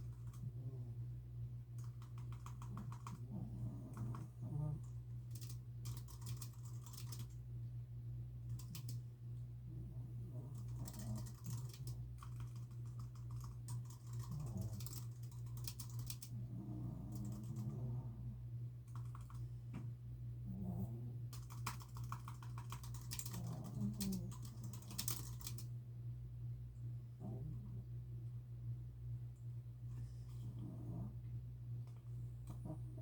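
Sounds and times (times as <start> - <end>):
typing on keyboard: 0.0 - 0.5, 1.8 - 4.3, 5.3 - 7.4, 8.5 - 9.0, 10.5 - 16.3, 17.1 - 17.8, 18.9 - 19.4, 21.3 - 25.7
low hum: 0.0 - 33.0
dog snoring softly: 1.8 - 5.6, 9.7 - 22.0, 27.2 - 28.0, 29.8 - 33.0.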